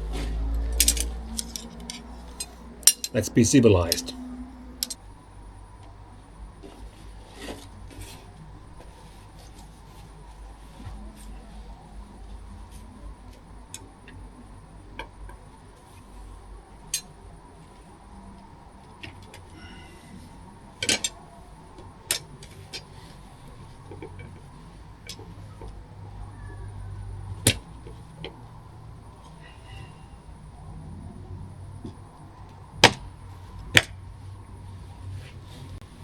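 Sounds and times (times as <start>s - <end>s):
low steady rumble: 0.0s - 36.0s
clicks and knocks of parts fitting: 0.2s - 3.2s, 20.8s - 21.2s.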